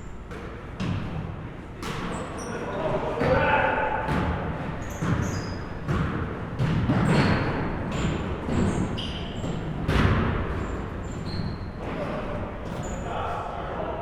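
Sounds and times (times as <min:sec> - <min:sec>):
sneaker squeaks: 0:01.8 - 0:13.5
basketball bouncing on wooden floor: 0:04.1 - 0:10.8.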